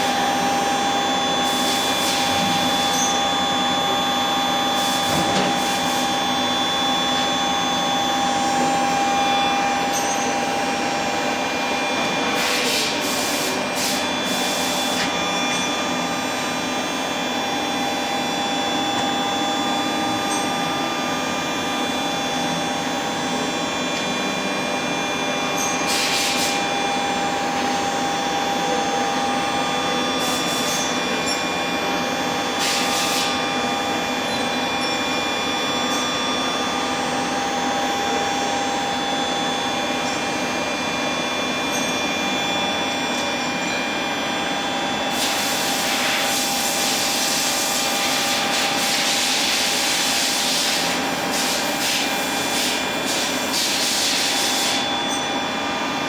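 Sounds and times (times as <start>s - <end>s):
machining center whining: 2.4s - 25.6s.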